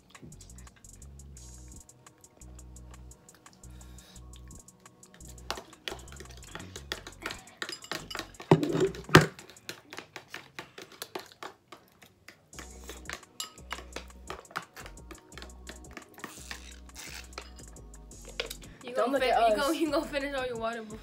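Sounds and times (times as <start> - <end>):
background music with beat: 0.0 - 10.2, 12.5 - 21.0
utensils clinking on bowls: 5.5 - 10.0, 12.8 - 14.8.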